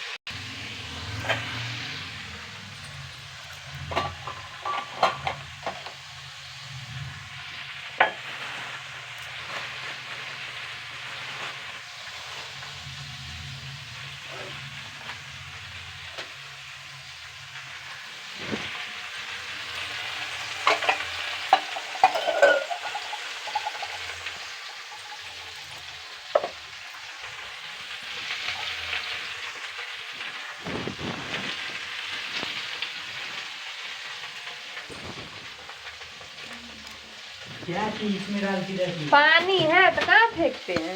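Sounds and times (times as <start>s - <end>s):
food sizzling in oil: 0.0s - 40.9s
spatula scraping a pan: 2.7s - 6.0s, 18.0s - 36.5s.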